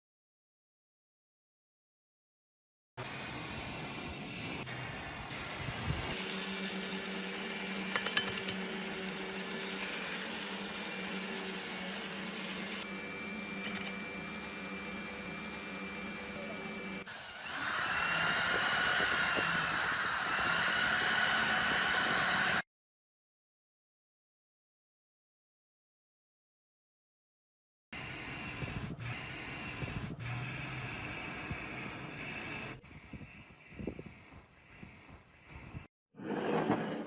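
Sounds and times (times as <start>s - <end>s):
power tool motor hum: 3.0s - 22.6s, 28.0s - 35.9s.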